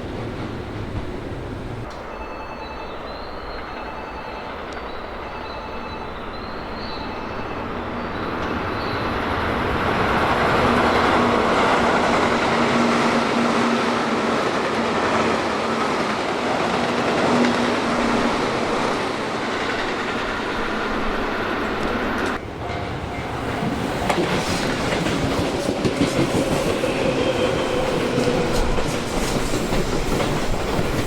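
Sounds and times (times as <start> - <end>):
electric train running on rails: 0.0 - 31.0
rail clatter: 7.0 - 31.0.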